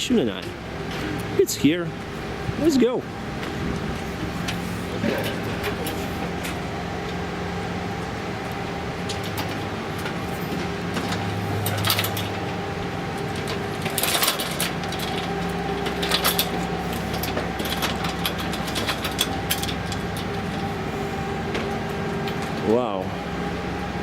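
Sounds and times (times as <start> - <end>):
mechanical hum: 0.0 - 24.0
ladder knocks and clanks: 9.1 - 20.7.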